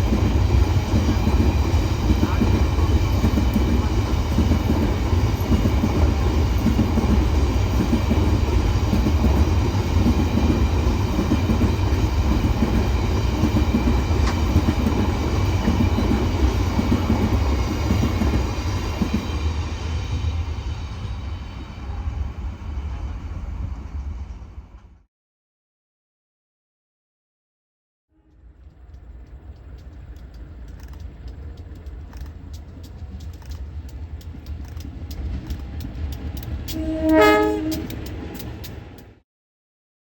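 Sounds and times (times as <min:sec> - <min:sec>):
train rumbling past: 0:00.0 - 0:25.1, 0:28.2 - 0:39.2
wheels clacking over rail joints: 0:00.1 - 0:19.2, 0:28.4 - 0:39.2.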